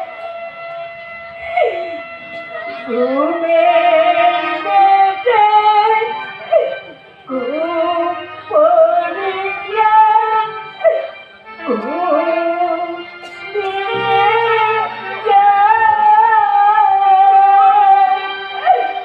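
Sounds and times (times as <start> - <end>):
high singing melody: 0.0 - 19.0
sustained accompaniment: 0.0 - 19.0.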